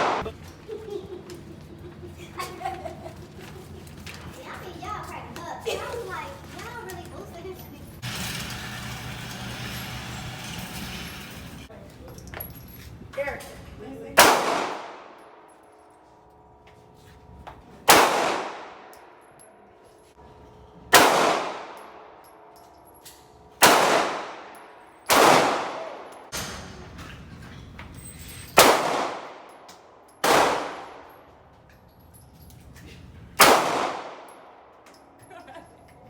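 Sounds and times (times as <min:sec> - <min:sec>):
gunshots with ringing echo: 0:00.0 - 0:00.3, 0:14.2 - 0:15.4, 0:17.9 - 0:18.9, 0:20.9 - 0:22.2, 0:23.6 - 0:26.6, 0:28.6 - 0:31.1, 0:33.4 - 0:34.6.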